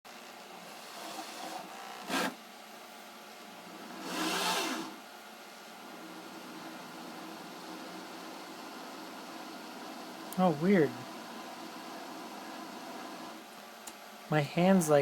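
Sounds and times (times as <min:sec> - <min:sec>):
power drill spinning: 0:00.1 - 0:02.4, 0:03.6 - 0:05.0
faint steady hum: 0:00.1 - 0:15.0.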